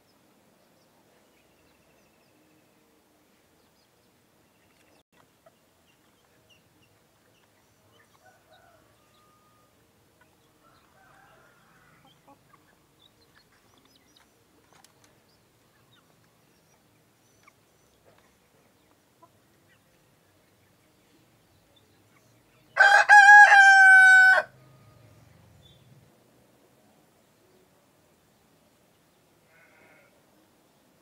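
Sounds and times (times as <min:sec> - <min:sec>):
rooster crowing: 0:08.2 - 0:09.8, 0:22.8 - 0:25.1.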